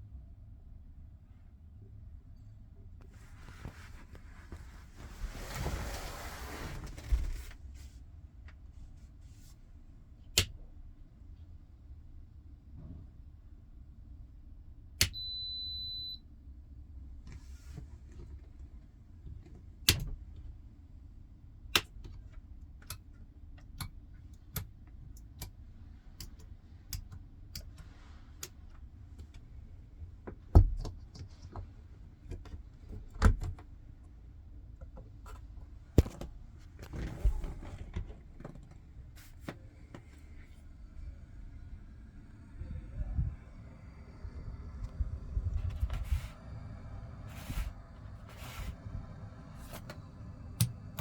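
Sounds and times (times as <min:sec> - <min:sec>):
low steady hum: 0:00.0 - 0:51.0.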